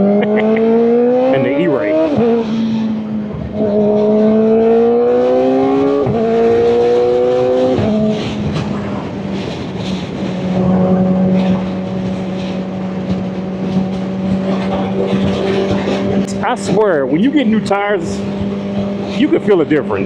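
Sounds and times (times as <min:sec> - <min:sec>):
motorcycle engine accelerating: 0:00.0 - 0:20.0
wind noise: 0:01.9 - 0:20.0.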